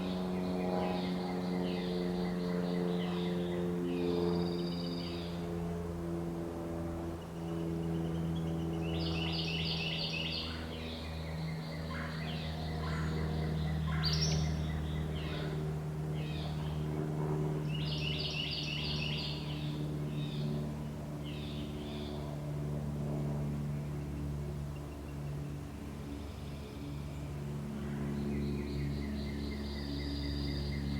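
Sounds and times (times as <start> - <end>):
birds singing: 0.0 - 5.7, 7.1 - 22.4, 23.6 - 30.9
steady low hum: 0.0 - 30.9.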